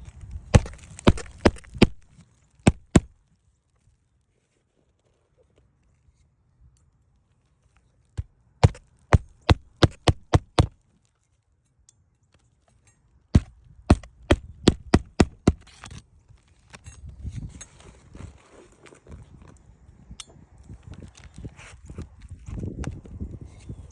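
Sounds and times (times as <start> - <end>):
hammer striking nails: 0.6 - 2.0, 2.7 - 3.1, 8.6 - 10.7, 13.4 - 15.6
faint scraping and rustling: 3.2 - 9.0, 10.8 - 13.2, 15.6 - 20.0, 20.7 - 23.9.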